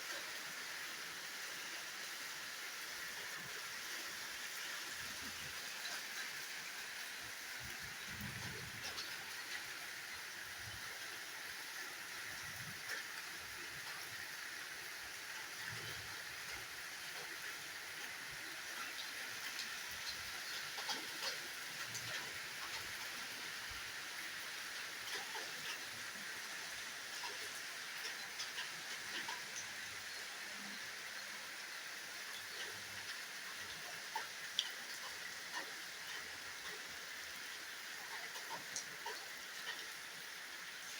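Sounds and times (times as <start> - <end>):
faint ticks: 18.0 - 23.2, 32.3 - 36.8.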